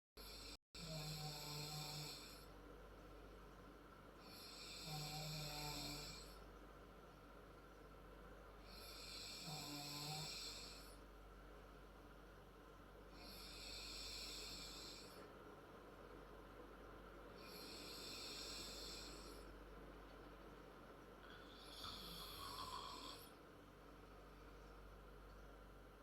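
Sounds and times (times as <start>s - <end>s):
girl snoring faintly: 17.4s - 19.5s.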